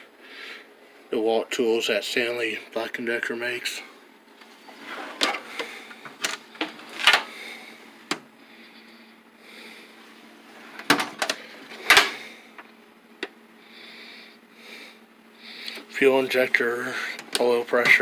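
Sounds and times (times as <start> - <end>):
tool chest drawers opening and shutting: 4.7 - 7.3, 10.6 - 12.2.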